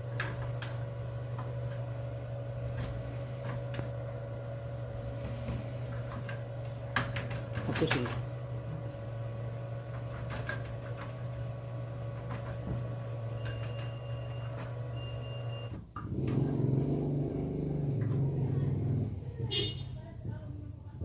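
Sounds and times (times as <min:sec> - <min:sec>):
drilling machine motor humming: 0:00.0 - 0:15.7.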